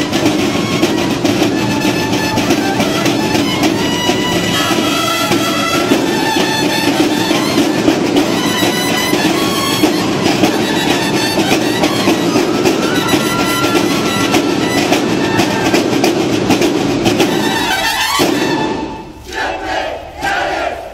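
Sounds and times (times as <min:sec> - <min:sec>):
music with rattling beat: 0:00.0 - 0:18.8
group shouting: 0:04.5 - 0:05.6, 0:12.2 - 0:15.9, 0:19.2 - 0:20.9.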